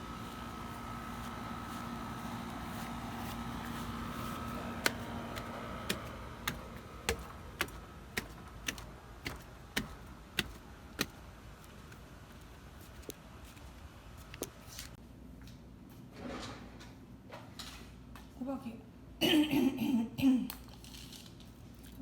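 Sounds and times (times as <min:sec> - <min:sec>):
steady hum: 0:00.0 - 0:14.7.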